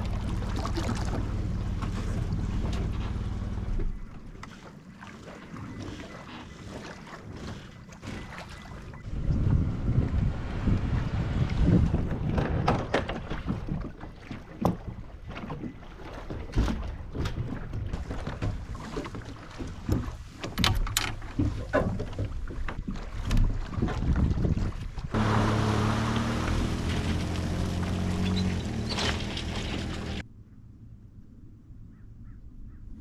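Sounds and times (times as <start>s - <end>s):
water noise: 0.0s - 30.2s
wind rumbling: 9.0s - 13.9s, 23.4s - 30.2s.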